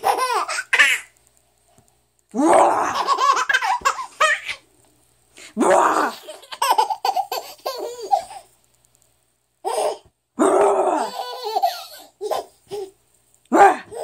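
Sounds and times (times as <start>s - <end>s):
baby laughing: 0.0s - 1.1s, 2.8s - 4.6s, 6.1s - 8.5s, 9.6s - 10.0s, 11.0s - 13.0s.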